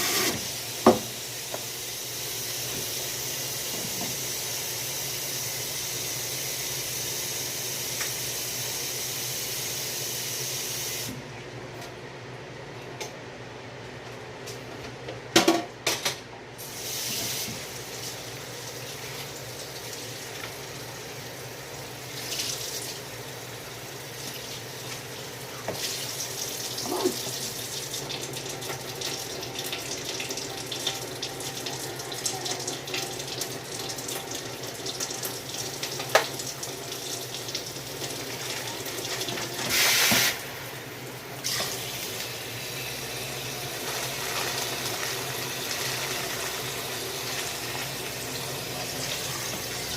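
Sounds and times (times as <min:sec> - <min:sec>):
tap water running into sink: 0:24.3 - 0:40.4, 0:43.6 - 0:49.9.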